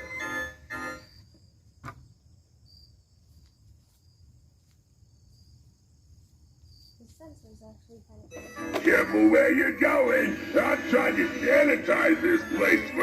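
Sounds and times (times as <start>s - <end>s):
crickets chirping: 0.0s - 13.0s.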